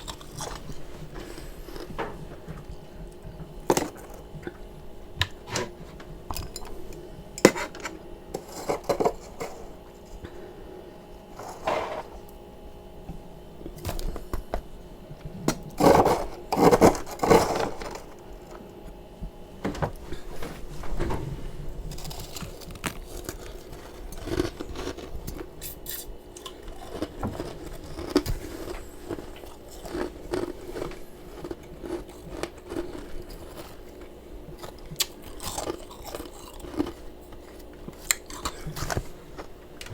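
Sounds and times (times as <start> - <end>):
freezer frost being scraped: 7.5 - 9.8, 11.3 - 12.2, 15.8 - 18.6.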